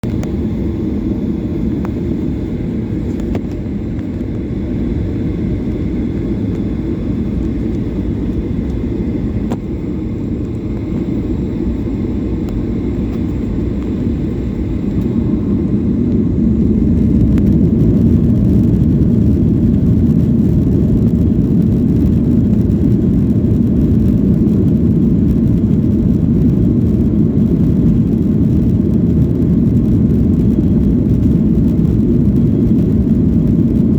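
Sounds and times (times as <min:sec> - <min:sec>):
jet engines and airflow rumble: 0:00.0 - 0:33.9.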